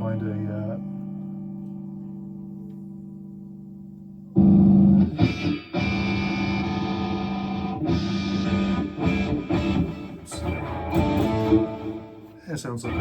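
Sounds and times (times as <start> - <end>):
distorted electric guitar chords: 0.0 - 13.0.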